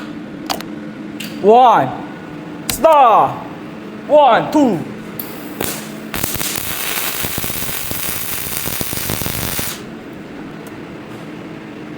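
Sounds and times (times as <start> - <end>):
steady low hum: 0.0 - 11.9
welding arc crackling: 5.3 - 9.9.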